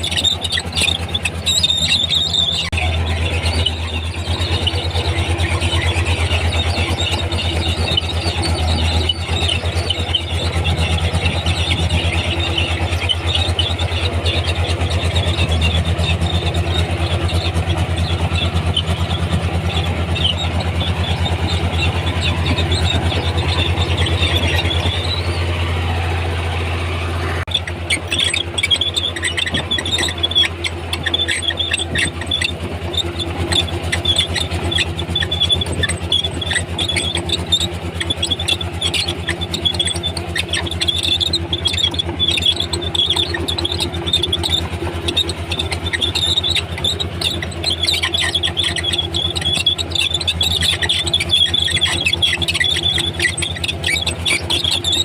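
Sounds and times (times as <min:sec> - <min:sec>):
bulldozer diesel engine: 0:00.0 - 0:55.0
steel tracks squealing: 0:00.0 - 0:55.0.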